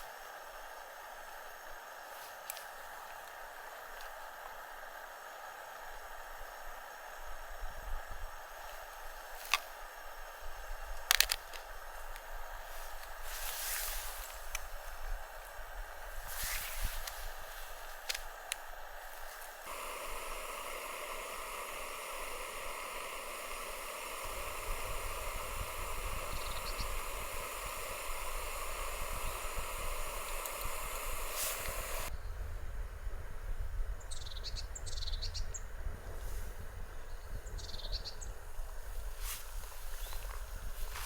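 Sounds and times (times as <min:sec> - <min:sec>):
hard wind: 0:19.8 - 0:37.7
wind rumble on microphone: 0:24.2 - 0:41.0.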